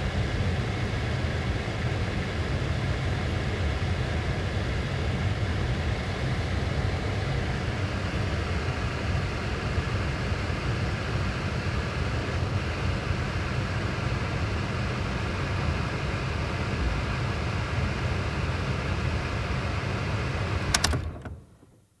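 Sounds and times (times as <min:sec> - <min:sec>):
car air conditioning humming: 0:19.9 - 0:21.8
sharp clicks: 0:20.7 - 0:21.7.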